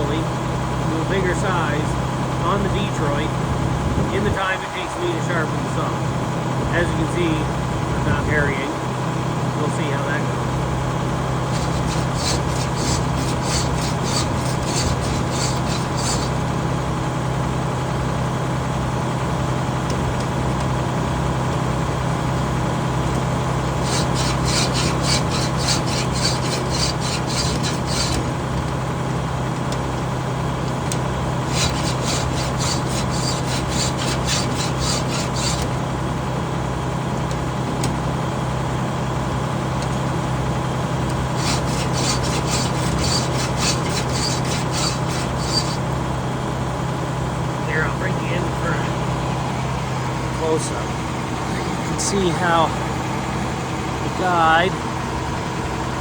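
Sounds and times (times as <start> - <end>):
low engine hum: 0.0 - 56.0
file sharpening saw teeth: 11.5 - 16.4, 23.8 - 28.4, 31.4 - 35.8, 41.4 - 45.9.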